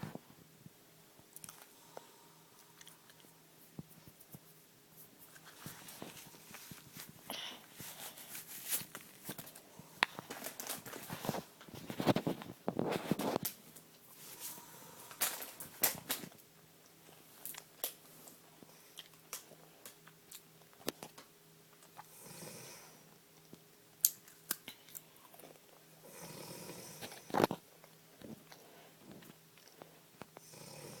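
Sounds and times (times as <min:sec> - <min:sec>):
faint steady hum: 0:00.0 - 0:31.0
woman snoring: 0:22.1 - 0:23.0, 0:26.0 - 0:27.2, 0:30.4 - 0:31.0.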